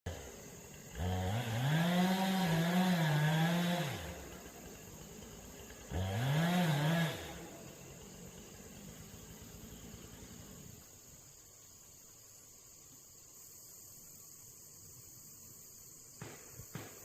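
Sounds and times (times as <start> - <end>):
chainsaw revving: 0.1 - 11.2.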